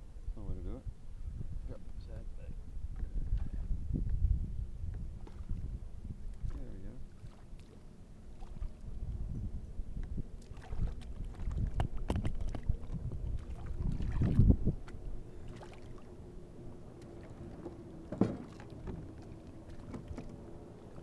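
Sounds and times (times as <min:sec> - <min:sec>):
low rumble of kayak on water: 0:00.0 - 0:21.0
knocks against kayak hull: 0:11.5 - 0:12.7, 0:18.1 - 0:19.2.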